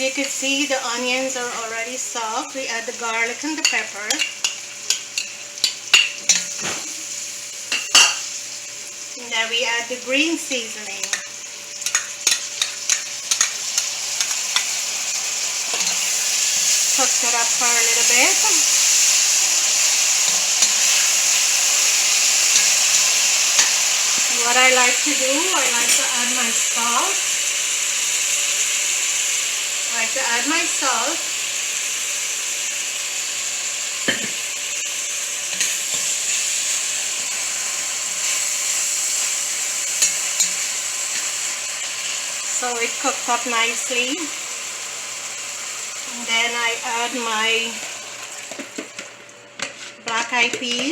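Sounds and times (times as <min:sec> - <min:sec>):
vegetables sizzling in oil: 0:00.0 - 0:50.9
spoon clicking against pot: 0:11.1 - 0:14.3.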